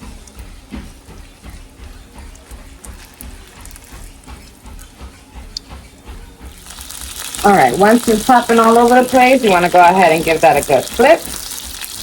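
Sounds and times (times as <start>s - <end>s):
background music: 0.0s - 12.0s
chicken sizzling in a frying pan: 6.5s - 12.0s
oil pops and crackles: 10.3s - 12.0s.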